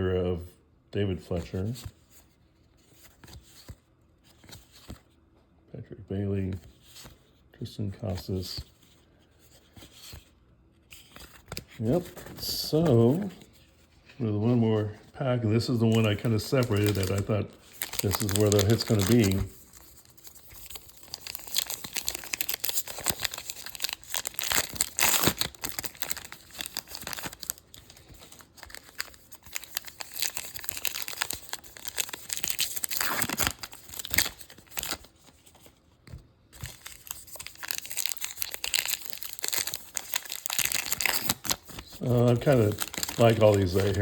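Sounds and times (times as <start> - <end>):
wrapper tearing and crinkling: 15.7 - 35.4, 36.6 - 44.0.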